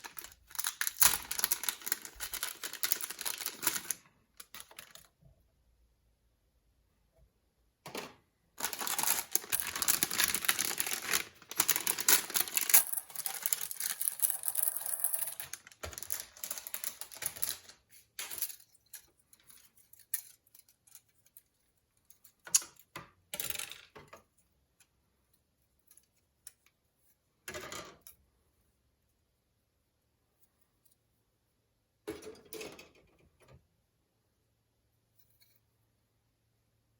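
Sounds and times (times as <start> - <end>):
plastic packaging crinkling: 0.0 - 5.1, 8.6 - 17.8
plastic parts clicking: 0.0 - 5.1, 7.9 - 21.4.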